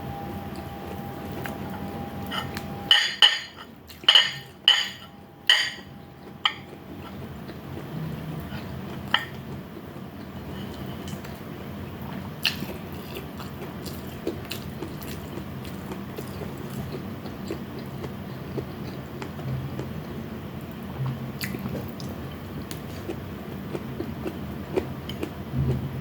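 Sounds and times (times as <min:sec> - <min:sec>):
low hum: 0:00.0 - 0:09.2
chewing and biting food: 0:12.1 - 0:20.8, 0:21.4 - 0:25.8.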